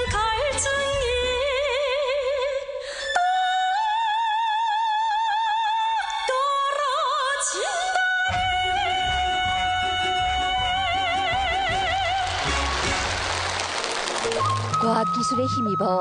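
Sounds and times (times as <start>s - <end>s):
instrumental accompaniment: 8.3s - 16.0s.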